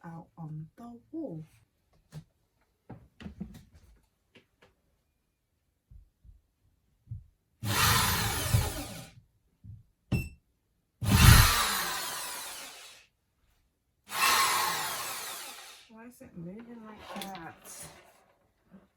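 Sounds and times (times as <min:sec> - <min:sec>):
electric drill boring into wall: 0:07.6 - 0:09.1, 0:11.0 - 0:13.0, 0:14.1 - 0:15.9, 0:16.9 - 0:18.3.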